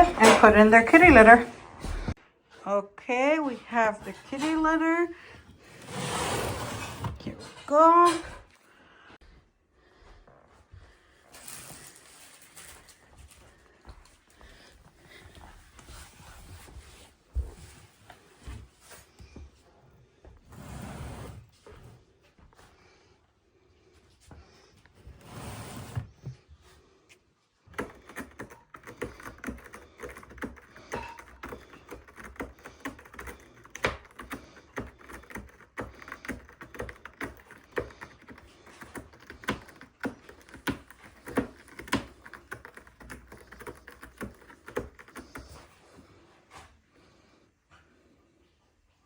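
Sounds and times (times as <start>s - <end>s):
cat litter granules scratched: 11.3s - 12.9s.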